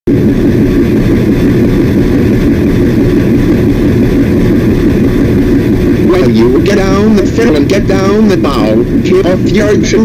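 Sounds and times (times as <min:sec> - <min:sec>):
washing machine spinning: 0:00.1 - 0:10.0.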